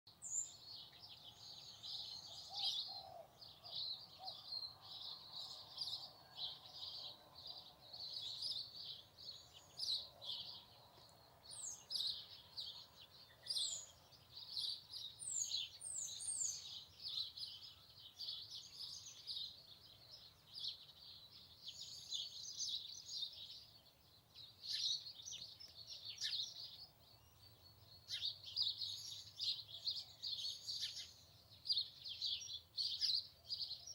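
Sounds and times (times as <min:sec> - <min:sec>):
birds chirping and singing: 0:00.1 - 0:33.9.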